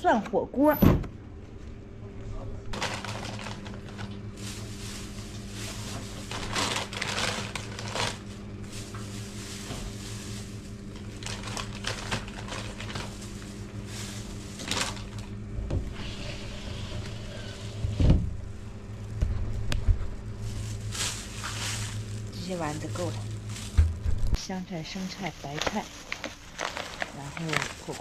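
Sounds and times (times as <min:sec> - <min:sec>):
steady low hum: 0:00.0 - 0:28.0
rustles and clicks of handling: 0:02.7 - 0:15.4, 0:19.7 - 0:28.0.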